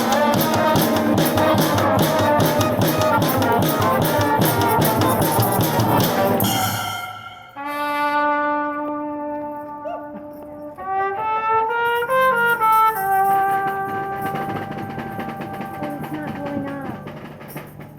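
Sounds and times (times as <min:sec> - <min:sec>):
drums: 0:00.0 - 0:08.0, 0:12.3 - 0:17.9
horns holding a chord: 0:00.0 - 0:09.8
brass band playing: 0:00.0 - 0:17.8.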